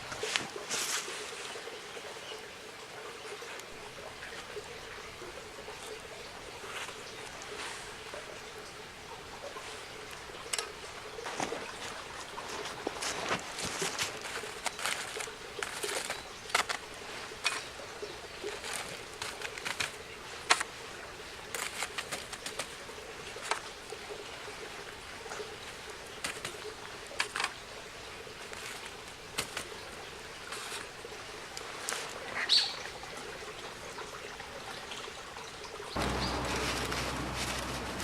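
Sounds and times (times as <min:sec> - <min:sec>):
campfire crackling and popping: 0:36.0 - 0:38.0.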